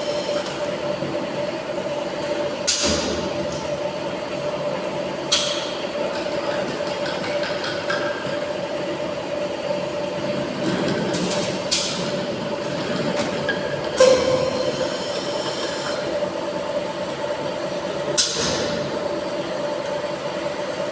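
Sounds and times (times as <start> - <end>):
bottle washing machine hum: 0.0 - 20.9.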